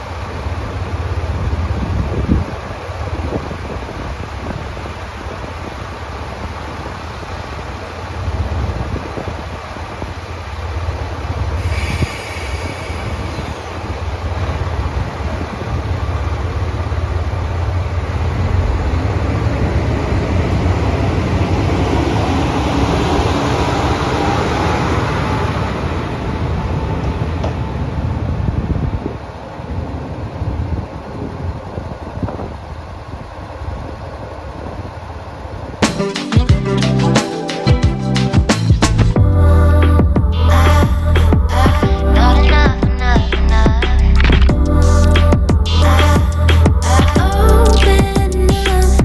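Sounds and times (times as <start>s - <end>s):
diesel train engine rumble: 0.0s - 35.8s, 36.6s - 49.0s
high-pitched tone: 35.8s - 49.0s.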